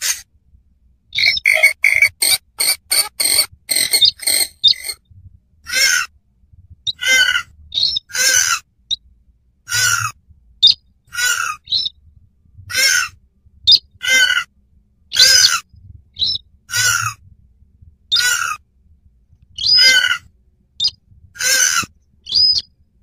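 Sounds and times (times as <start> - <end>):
birds calling in duet: 1.1 - 5.0, 5.7 - 6.1, 6.9 - 8.6, 9.7 - 12.0, 12.7 - 14.5, 15.1 - 15.6, 16.2 - 17.2, 18.1 - 18.6, 19.6 - 22.8.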